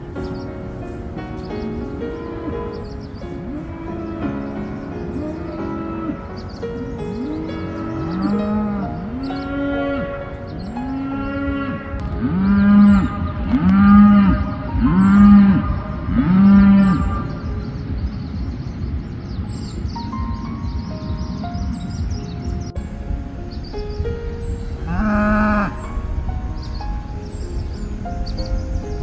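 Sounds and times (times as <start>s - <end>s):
cow mooing: 5.2s - 6.3s, 7.1s - 17.5s.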